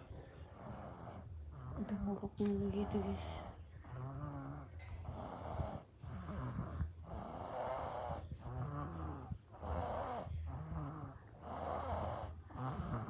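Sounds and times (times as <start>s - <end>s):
baby snoring: 3.9s - 13.0s.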